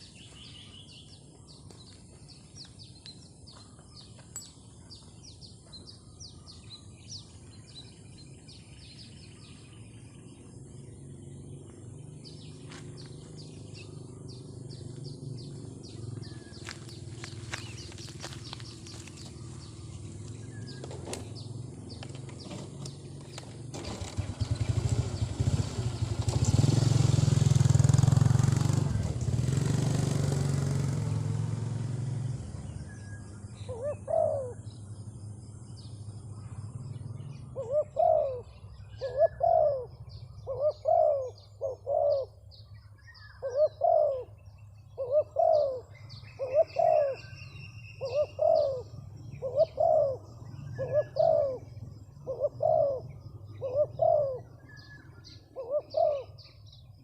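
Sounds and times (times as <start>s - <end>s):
small birds chirping: 0.0s - 57.0s
dove cooing: 33.6s - 34.8s, 37.4s - 42.4s, 43.3s - 56.6s.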